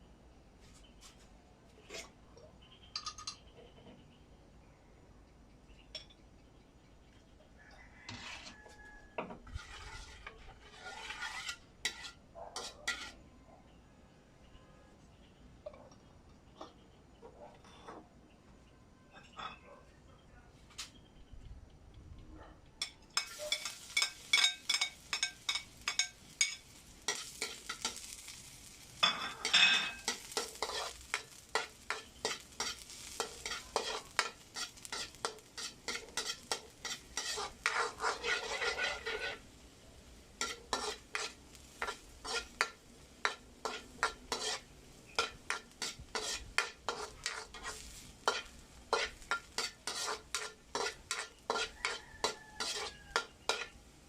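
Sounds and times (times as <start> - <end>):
spatula scraping a frying pan: 1.8 - 2.2, 8.0 - 13.3, 23.2 - 53.8
food sizzling: 22.8 - 54.0.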